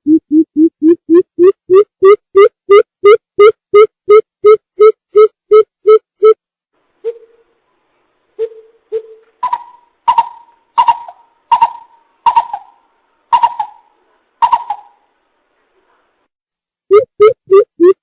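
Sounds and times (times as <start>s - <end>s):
bird deep hooting calls: 8.4s - 15.0s.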